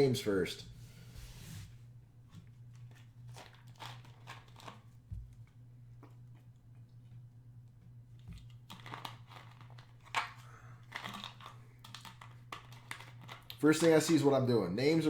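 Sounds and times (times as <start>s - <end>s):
steady low hum: 0.0s - 8.8s.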